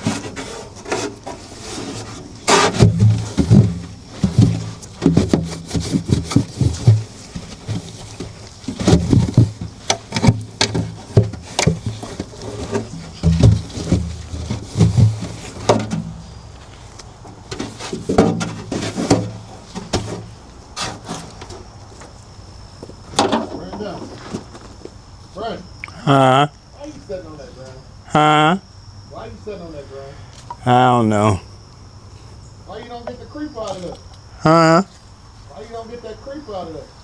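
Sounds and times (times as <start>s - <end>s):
objects knocking and clattering: 0.0s - 16.6s, 17.3s - 21.7s, 23.1s - 24.8s.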